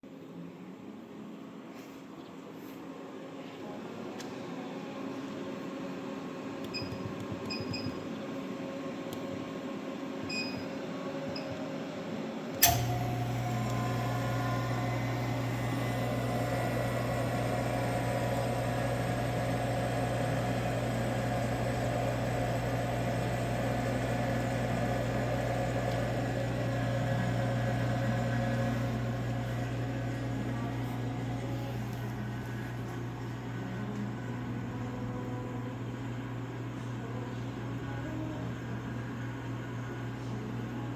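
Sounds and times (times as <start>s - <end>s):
switch click: 12.6s - 14.0s
compressor humming: 12.6s - 40.9s.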